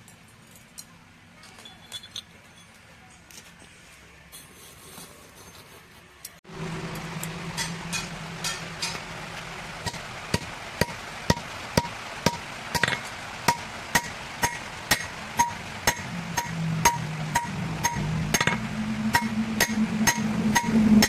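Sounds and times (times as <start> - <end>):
steady low hum: 6.2 - 21.0
hammer striking steel on anvil: 6.9 - 9.1, 9.8 - 21.0.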